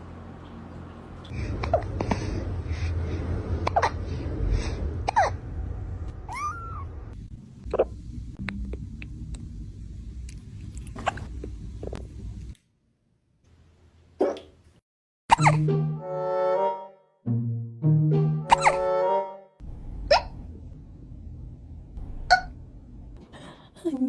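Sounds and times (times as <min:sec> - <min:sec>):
high squeaky cat call: 0:06.3 - 0:06.9, 0:20.1 - 0:20.4
cat hiccuping: 0:20.0 - 0:20.4, 0:22.2 - 0:22.6.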